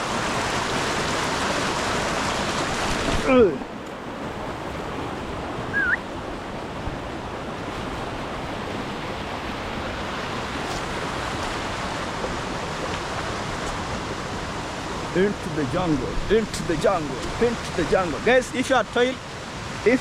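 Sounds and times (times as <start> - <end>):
river water rushing: 0.0 - 20.0
short rising chirp: 5.7 - 6.0.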